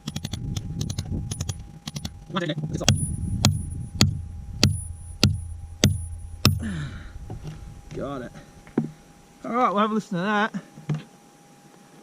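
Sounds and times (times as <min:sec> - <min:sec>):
hammer striking steel chisel: 0:02.8 - 0:06.7.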